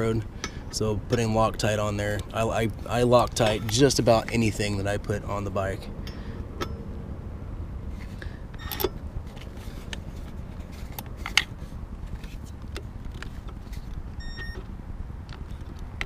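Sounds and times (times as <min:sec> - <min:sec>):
steady low hum: 0:00.0 - 0:16.0
metallic clicks of hand tools: 0:08.5 - 0:09.0
short high beep: 0:14.2 - 0:14.6.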